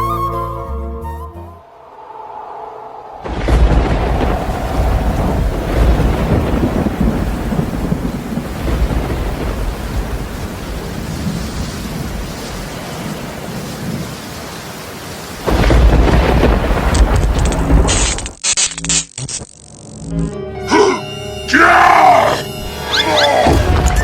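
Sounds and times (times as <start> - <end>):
rumbling thunder: 3.0 - 14.2, 15.4 - 18.2
steady rain: 3.2 - 18.6.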